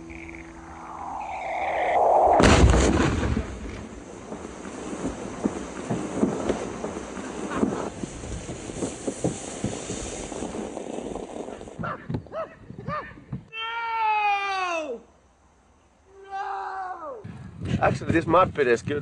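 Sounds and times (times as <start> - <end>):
explosion boom: 0.6 - 7.0.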